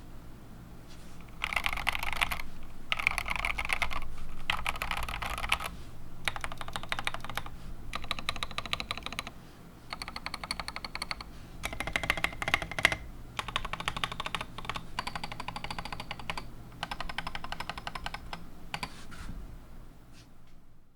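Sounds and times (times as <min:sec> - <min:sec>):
mechanical keyboard typing: 0:01.3 - 0:09.3, 0:09.9 - 0:19.0.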